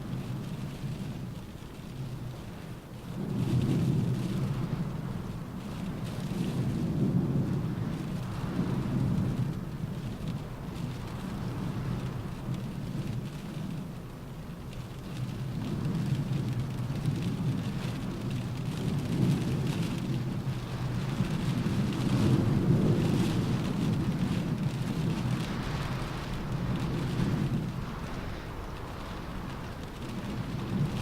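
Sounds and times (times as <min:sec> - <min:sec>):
rain pattering on car roof: 0:00.0 - 0:31.0
wind gusting: 0:18.9 - 0:31.0.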